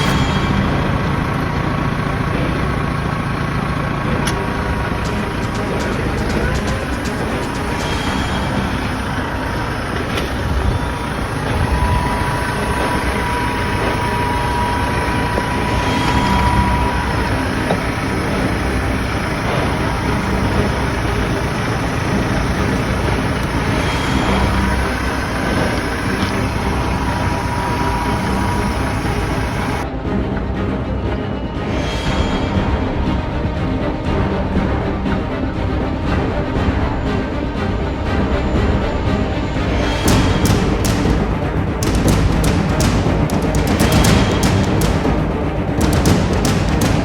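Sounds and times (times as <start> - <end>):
tractor diesel engine running: 0.0 - 47.0.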